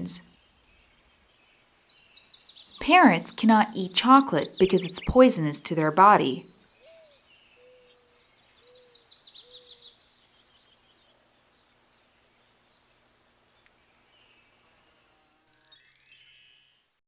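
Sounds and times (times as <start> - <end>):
birds chirping: 0.0 - 15.5
bright high-pitched sound: 15.5 - 16.9.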